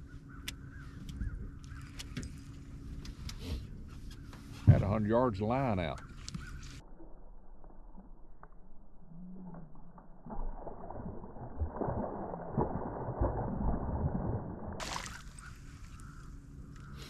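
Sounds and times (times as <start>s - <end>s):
water gurgling: 10.3s - 15.4s.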